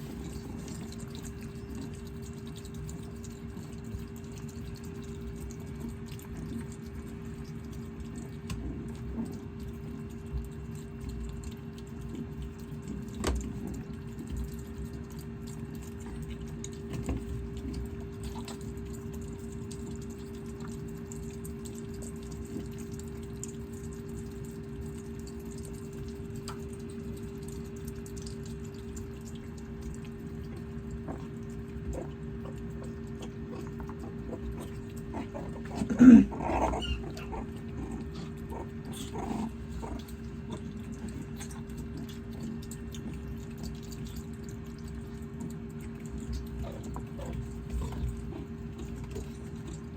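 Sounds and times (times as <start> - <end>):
low electrical hum: 0.0 - 49.9
meerkat growling call: 33.5 - 40.0.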